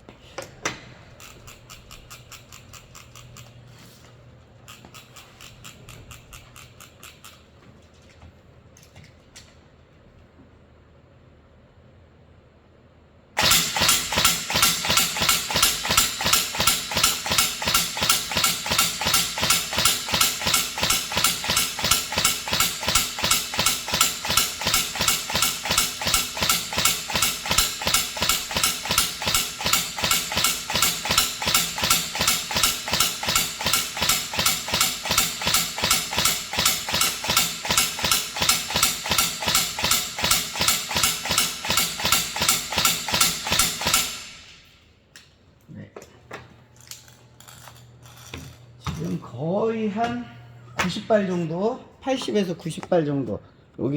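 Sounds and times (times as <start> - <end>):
replica rifle firing: 13.4 - 44.8.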